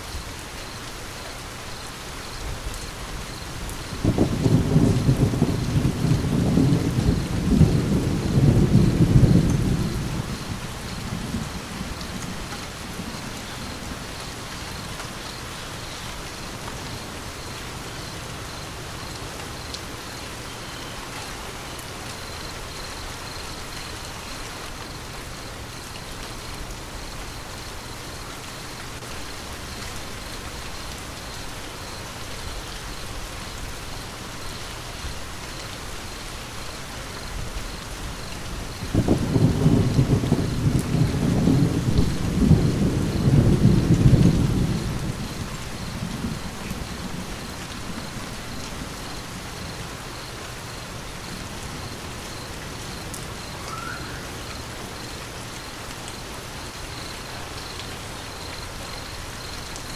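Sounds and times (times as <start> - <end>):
steady rain: 0.0 - 59.9
low thunder rumble: 3.5 - 15.2, 37.2 - 55.2.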